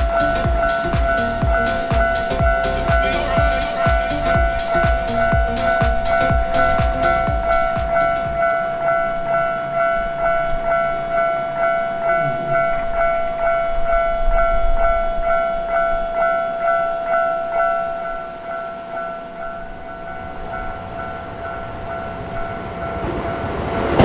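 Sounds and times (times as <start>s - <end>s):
low rumble: 0.0s - 8.8s, 19.4s - 24.0s
railway crossing bell ringing: 0.0s - 24.0s
train wheels clattering over rails: 20.0s - 24.0s.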